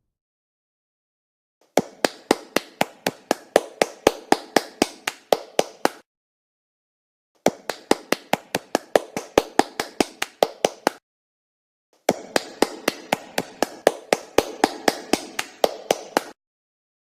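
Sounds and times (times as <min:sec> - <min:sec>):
sharp claps: 0:01.7 - 0:06.1, 0:07.4 - 0:11.0, 0:12.1 - 0:16.4.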